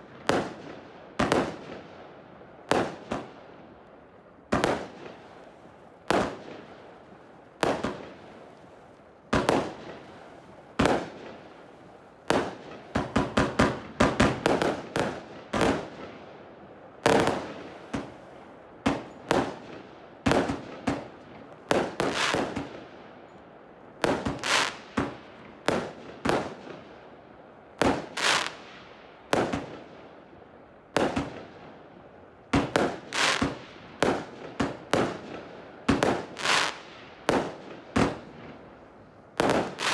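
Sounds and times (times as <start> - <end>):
firework aerial bursts crackling: 4.5 - 16.2, 17.0 - 22.9, 24.0 - 26.9, 27.8 - 29.9, 32.6 - 39.9.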